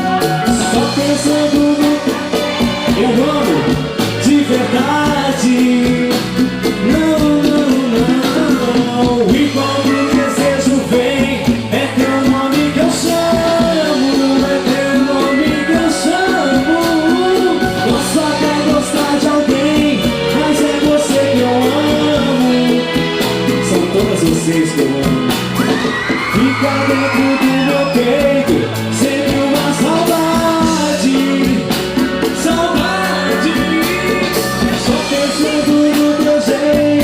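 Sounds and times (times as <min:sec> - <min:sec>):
bass: 0:00.0 - 0:37.0
steady drum beat: 0:00.0 - 0:37.0.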